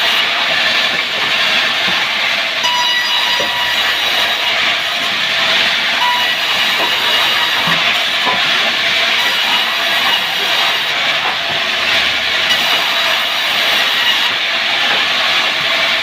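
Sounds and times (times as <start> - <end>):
timber saw running: 0.0 - 16.0.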